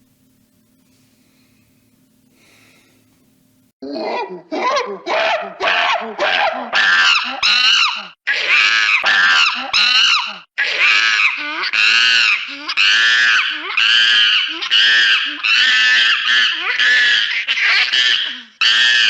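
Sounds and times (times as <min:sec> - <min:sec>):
faint hum: 0:00.0 - 0:06.7
high-pitched screaming: 0:06.8 - 0:19.0.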